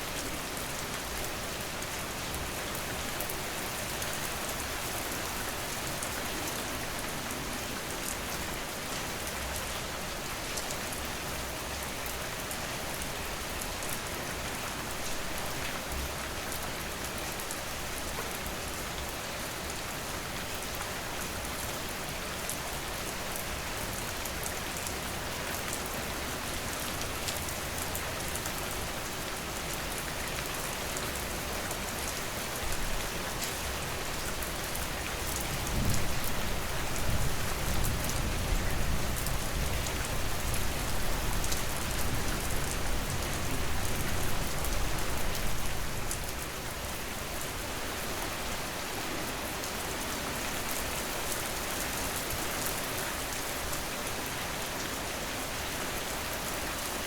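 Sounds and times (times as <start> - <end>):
rain falling: 0.0 - 57.0.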